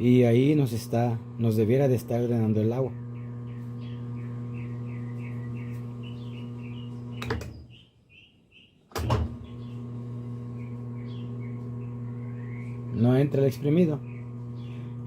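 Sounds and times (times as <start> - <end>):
washing machine motor humming: 0.0 - 7.7, 9.0 - 15.0.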